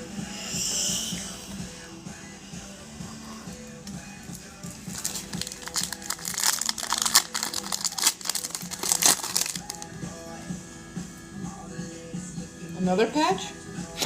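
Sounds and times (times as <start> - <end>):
background music: 0.0 - 14.0
foil wrapper crinkling and tearing: 4.3 - 9.9.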